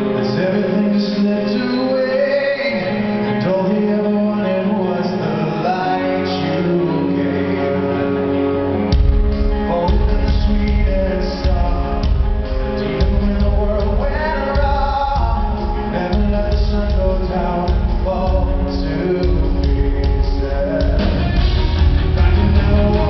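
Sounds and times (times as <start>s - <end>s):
live rock band playing: 0.0s - 23.0s
male lead vocal: 0.0s - 23.0s
drums and bass: 8.8s - 23.0s.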